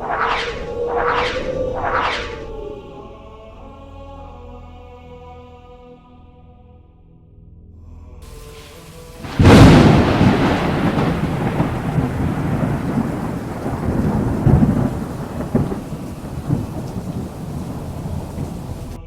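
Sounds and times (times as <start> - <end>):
rain-like hiss: 8.2 - 19.0
thunder crack and rumble: 9.2 - 19.0.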